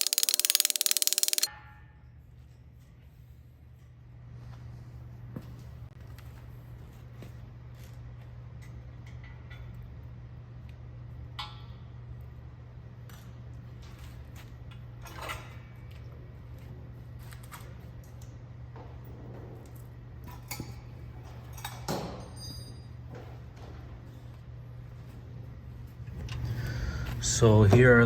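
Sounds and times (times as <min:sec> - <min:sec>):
metal parts clinking: 0:00.0 - 0:01.5.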